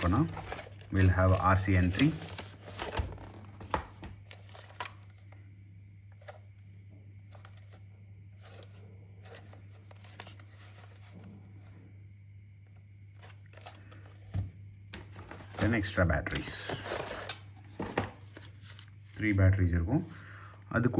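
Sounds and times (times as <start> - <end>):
soft clicks and packaging rustles: 0.0 - 5.4, 7.2 - 7.8, 8.4 - 11.4.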